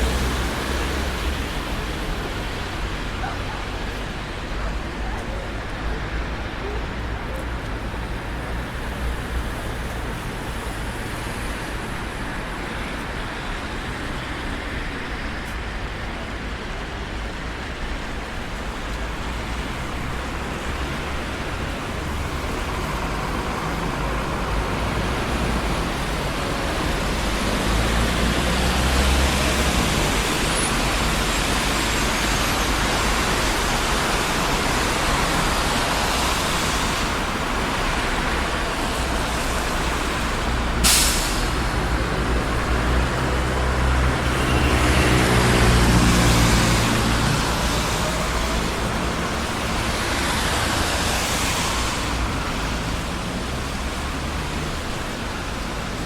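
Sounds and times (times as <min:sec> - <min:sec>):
city traffic rumble: 0:00.0 - 0:56.0
vehicle passing close: 0:22.0 - 0:55.8.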